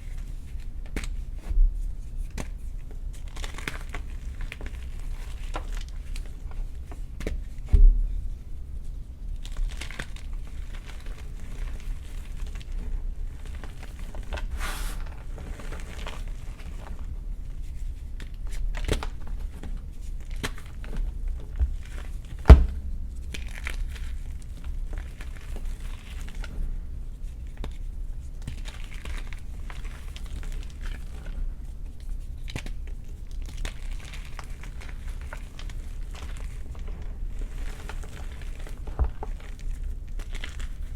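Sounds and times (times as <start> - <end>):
chalk crunching and crumbling: 9.4 - 26.6, 27.2 - 40.9.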